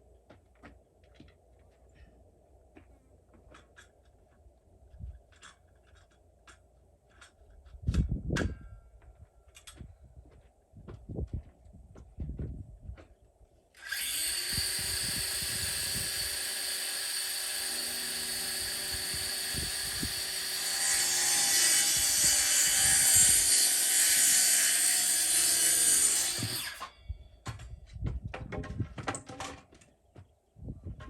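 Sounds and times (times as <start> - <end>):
electric power tool running: 13.8 - 26.8.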